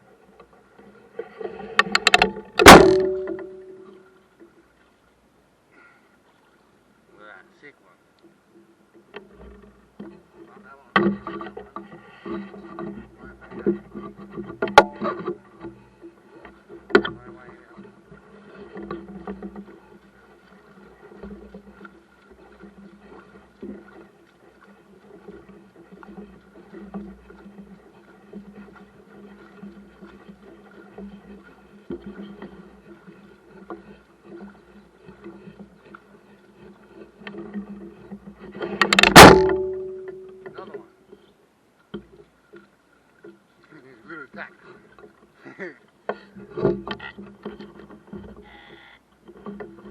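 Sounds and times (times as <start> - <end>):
mechanical hum on boat: 0.0 - 49.9
sharp knocks: 1.8 - 3.9, 13.6 - 15.4, 38.7 - 40.8
loud knock with ringing tone: 2.6 - 3.9, 39.0 - 40.5.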